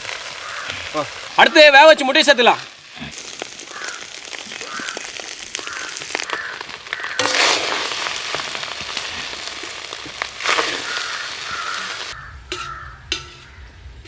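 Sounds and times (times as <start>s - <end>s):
rice sizzling in a pan: 0.0s - 13.3s
spatula scraping a pan: 7.0s - 13.6s.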